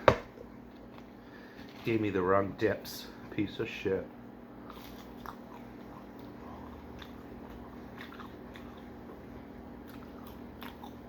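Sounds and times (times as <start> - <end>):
low room hum: 0.0 - 11.0
faint chewing: 4.6 - 11.0.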